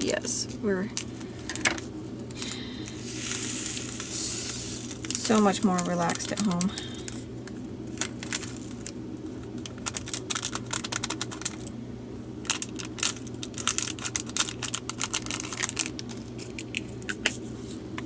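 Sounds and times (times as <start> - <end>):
tiny beads pouring into plastic container: 3.0 - 5.5.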